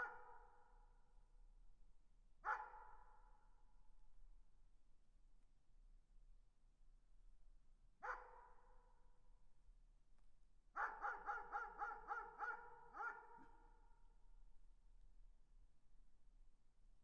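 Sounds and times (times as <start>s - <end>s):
dog barking with echo: 2.4s - 2.8s, 8.0s - 8.5s, 10.8s - 13.6s.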